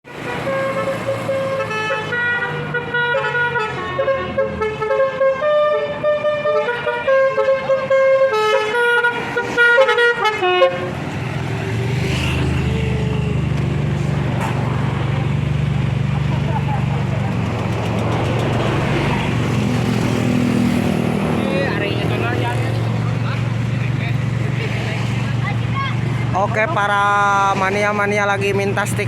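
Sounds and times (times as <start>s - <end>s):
multi-tone musical car horn: 0.0s - 11.1s
vehicle engine rumbling: 0.0s - 29.0s.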